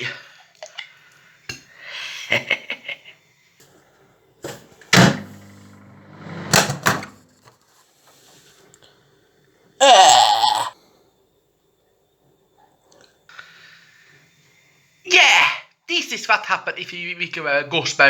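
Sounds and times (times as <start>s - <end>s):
microwave clicks and rattles: 5.0s - 5.4s, 6.2s - 7.2s
microwave door clunks: 5.0s - 5.4s, 6.2s - 7.2s
microwave oven hum: 5.0s - 7.3s.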